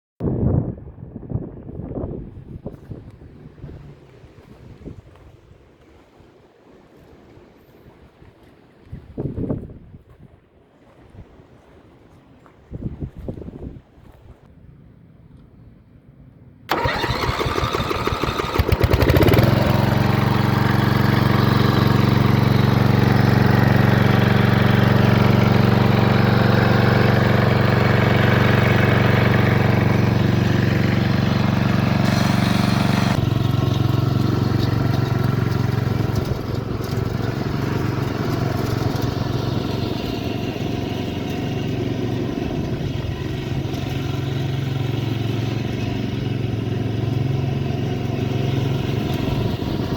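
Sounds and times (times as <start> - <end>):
starter motor cranking: 16.7 - 41.5
lawnmower engine running: 16.7 - 49.9.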